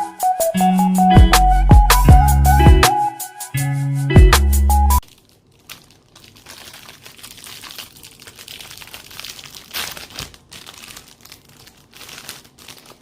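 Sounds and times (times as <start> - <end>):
popcorn bag crinkling: 5.0 - 13.0.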